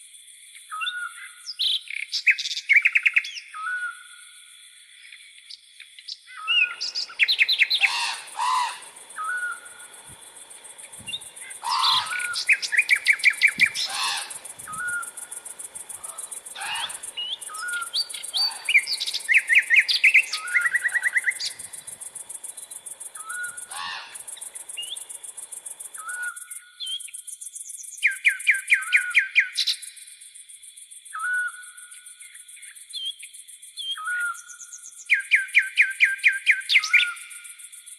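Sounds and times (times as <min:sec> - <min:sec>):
crickets buzzing: 0:00.1 - 0:37.9
bird chirping rapid trills: 0:06.6 - 0:27.1.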